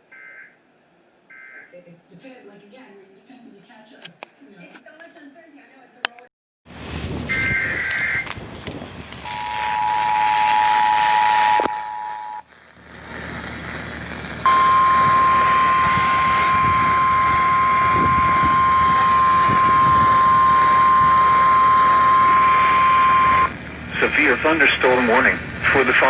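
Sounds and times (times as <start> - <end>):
steady warning alarm tone: 7.3 - 8.3, 9.2 - 12.4, 14.4 - 23.6
radio hiss: 9.2 - 26.0
two-tone attention signal: 9.3 - 12.4, 14.5 - 23.5.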